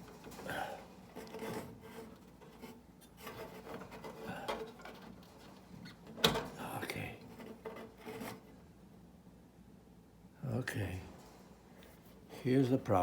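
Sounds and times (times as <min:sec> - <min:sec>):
hand rubbing wire connectors: 0:00.0 - 0:08.6.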